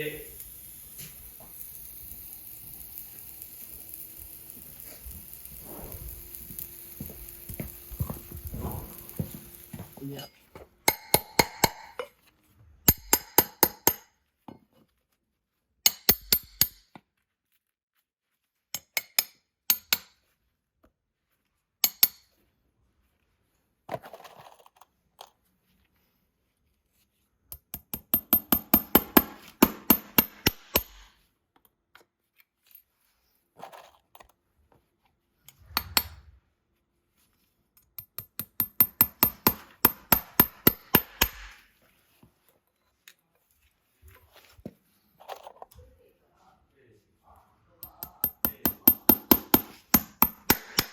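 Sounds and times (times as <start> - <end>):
hammer striking metal: 10.9 - 12.0, 12.9 - 14.1, 27.8 - 31.1, 38.0 - 41.6, 47.8 - 50.9.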